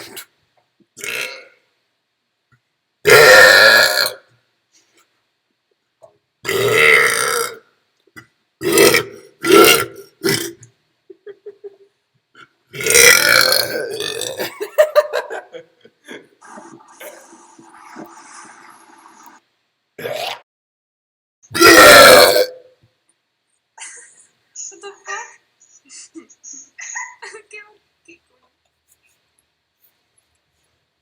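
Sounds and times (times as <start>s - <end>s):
person burping loudly: 1.0s - 1.6s, 3.0s - 4.3s, 6.4s - 7.6s, 8.6s - 10.7s, 12.4s - 14.6s, 20.0s - 20.4s, 21.5s - 22.7s.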